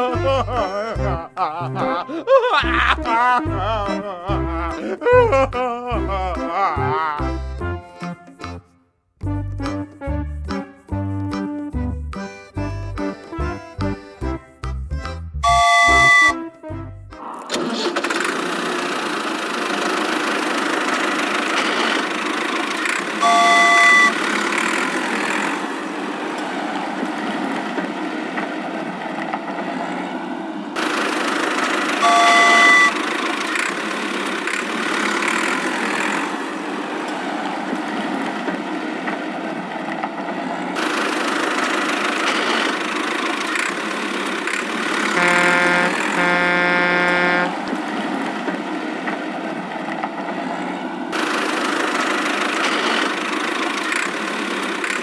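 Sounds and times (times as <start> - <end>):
cartoon engine running: 0.0 - 7.5, 15.4 - 16.5, 17.1 - 27.6, 30.8 - 38.5, 40.8 - 48.3, 51.2 - 55.0
short high horn toot: 15.4 - 16.5, 23.2 - 24.2, 32.0 - 33.0, 45.2 - 47.6
low horn honks: 15.4 - 17.0, 23.2 - 24.3, 32.0 - 33.0, 45.1 - 47.7.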